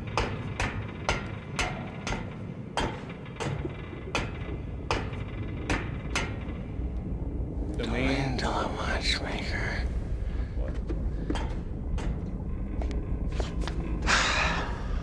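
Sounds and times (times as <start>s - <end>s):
sharp hammer-like knocks: 0.0s - 6.6s
low steady rumble: 0.0s - 15.0s.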